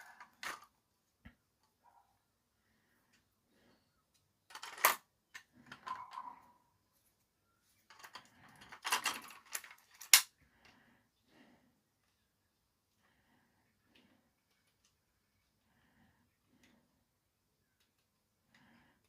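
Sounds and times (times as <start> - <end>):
plastic toy parts clicking and rattling: 0.0 - 0.7, 4.1 - 6.5, 7.8 - 10.3.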